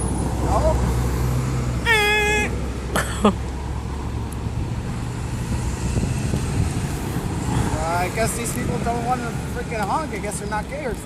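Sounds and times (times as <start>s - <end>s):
traffic rumble: 0.0s - 11.0s
high-pitched tone: 1.9s - 2.6s.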